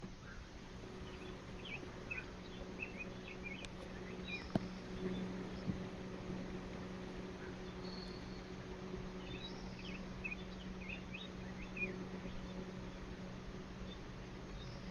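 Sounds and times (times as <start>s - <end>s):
low hum: 0.0s - 14.9s
small birds chirping: 0.0s - 14.9s.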